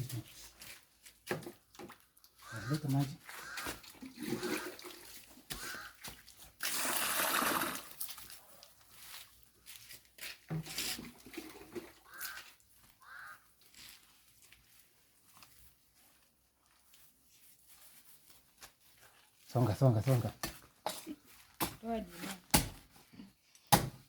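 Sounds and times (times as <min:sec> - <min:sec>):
water splashing onto ground: 0:01.2 - 0:13.0.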